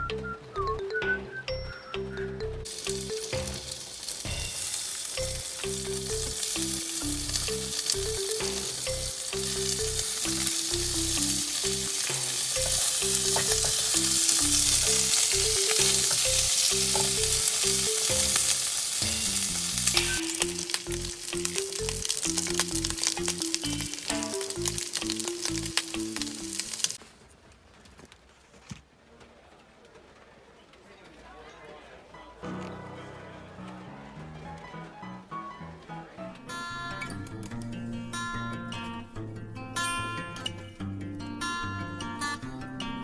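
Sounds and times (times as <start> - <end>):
background music: 0.0 - 27.0, 32.2 - 43.0
food frying with sizzle: 2.7 - 27.0.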